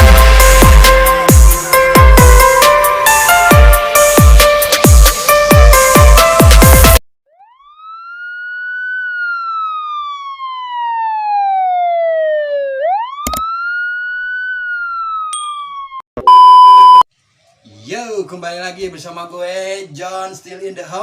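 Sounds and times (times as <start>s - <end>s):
electronic dance music: 0.0s - 7.0s
wailing siren: 7.3s - 16.0s.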